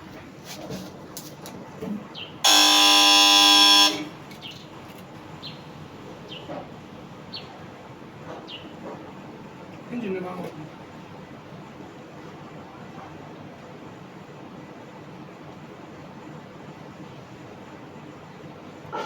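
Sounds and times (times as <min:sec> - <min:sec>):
loud steady buzz: 0:02.4 - 0:04.3.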